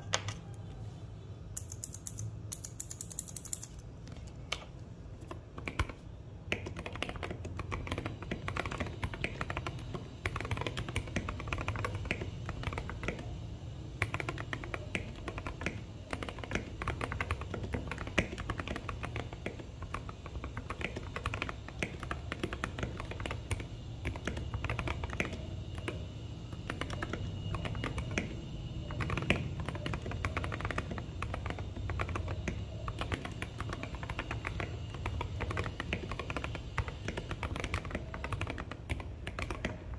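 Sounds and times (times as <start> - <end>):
fast mechanical keyboard typing: 1.6 - 3.8, 5.2 - 39.9.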